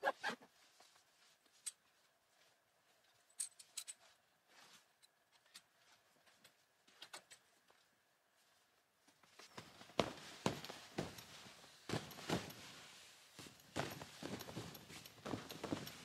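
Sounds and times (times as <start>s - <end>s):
footsteps: 9.2s - 16.0s.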